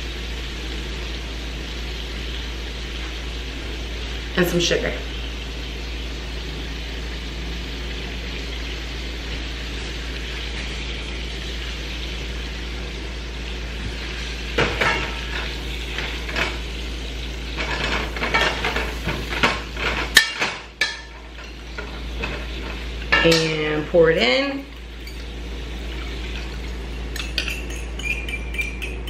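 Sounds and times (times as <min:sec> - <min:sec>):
spoon clinking against a bowl: 0:25.0 - 0:25.3, 0:27.1 - 0:29.0.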